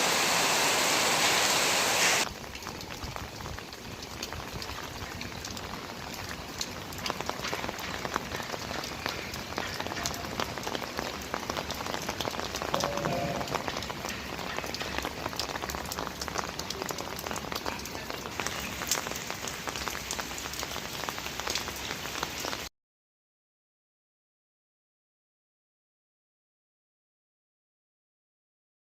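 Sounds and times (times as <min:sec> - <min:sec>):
heavy rain falling: 0:00.0 - 0:22.7.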